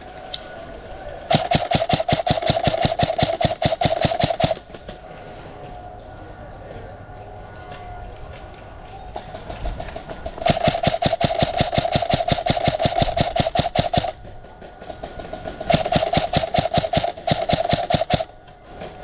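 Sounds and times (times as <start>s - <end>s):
airsoft gun firing bursts: 1.3s - 5.0s, 9.4s - 19.0s.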